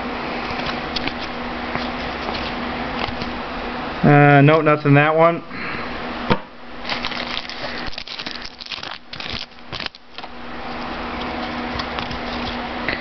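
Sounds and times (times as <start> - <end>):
low room hum: 0.0 - 13.0
foil wrapper crinkling: 6.8 - 12.6.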